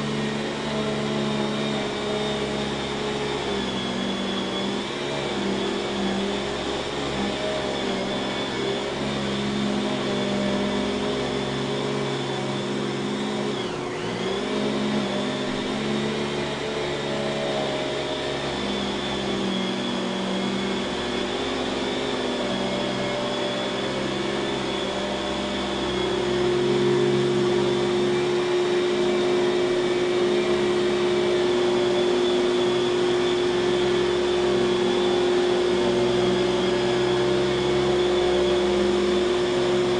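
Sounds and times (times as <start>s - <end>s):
vacuum cleaner motor whining: 0.0s - 39.9s.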